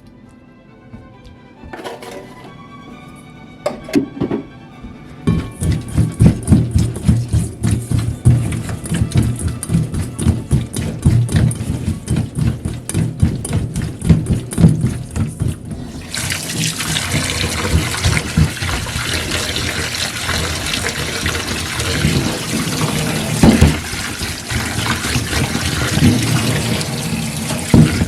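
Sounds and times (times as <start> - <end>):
tap water running into sink: 3.7 - 4.4, 5.3 - 28.0
quick rhythmic rubbing: 5.3 - 16.4.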